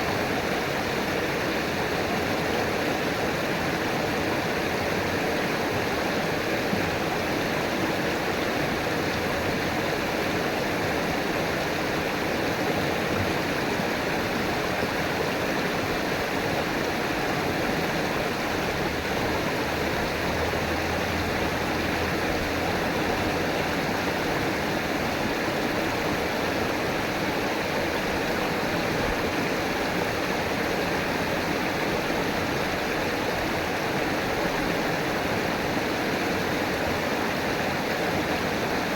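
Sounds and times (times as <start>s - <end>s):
river rushing over rocks: 0.0s - 38.9s.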